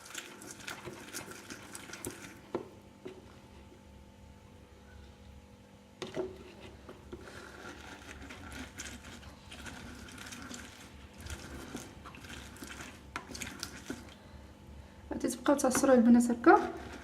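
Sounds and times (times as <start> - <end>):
juicer grinding and squelching: 0.0 - 3.5, 6.0 - 14.4, 16.2 - 17.0.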